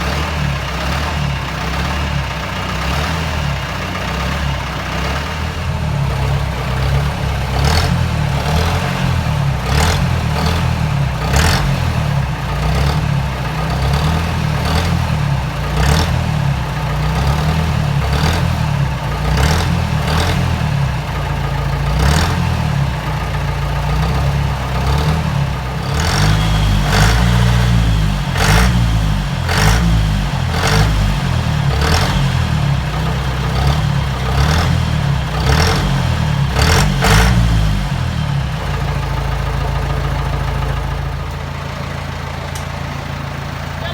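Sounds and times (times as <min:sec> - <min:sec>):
diesel engine rumbling with throttle blips: 0:00.0 - 0:43.9.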